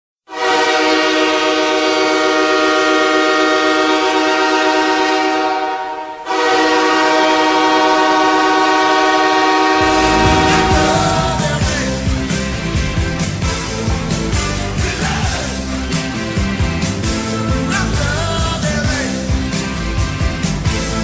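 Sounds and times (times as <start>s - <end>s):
goal horn blasts: 9.5s - 12.2s
music with heavy beat: 9.8s - 12.2s.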